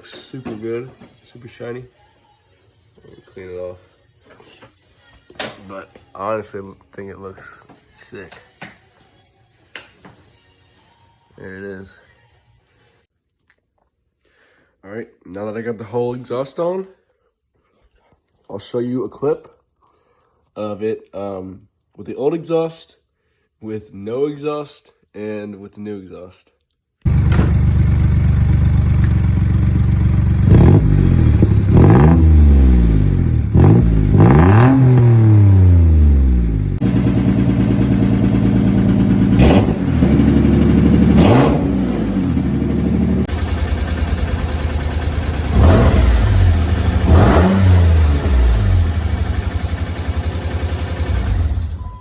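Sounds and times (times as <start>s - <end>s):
car engine idling with throttle blips: 27.1s - 52.0s.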